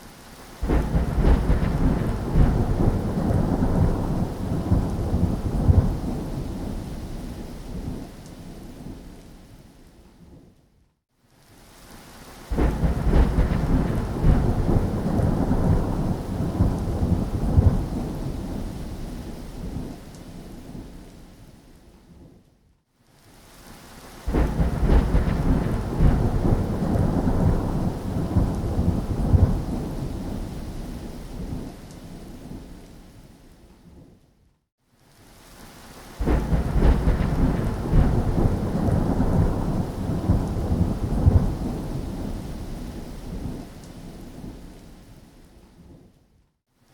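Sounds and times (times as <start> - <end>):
rain: 0.0 - 46.9
rumbling thunder: 0.6 - 6.9, 12.5 - 18.9, 24.3 - 31.7, 36.2 - 43.7.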